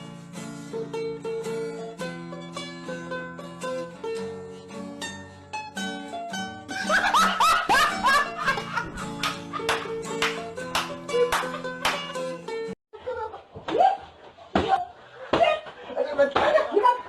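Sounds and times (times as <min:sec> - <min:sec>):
upbeat music with plucked strings: 0:00.0 - 0:12.8.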